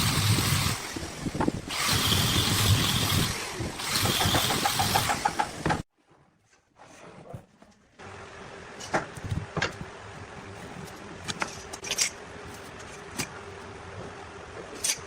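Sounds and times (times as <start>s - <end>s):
knocks and clicks of tools: 1.3s - 5.9s.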